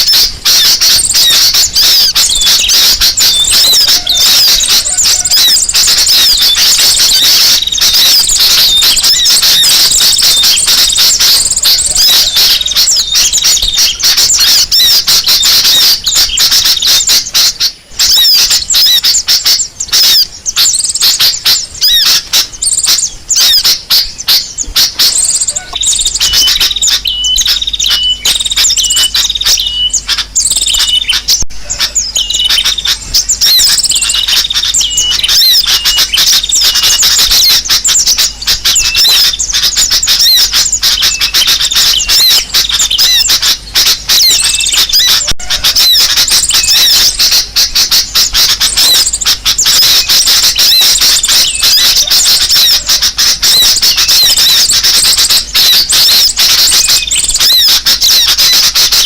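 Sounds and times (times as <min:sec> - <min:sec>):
short repeated bird call: 0:00.0 - 0:59.0
small birds chattering and chirping: 0:00.0 - 0:59.0.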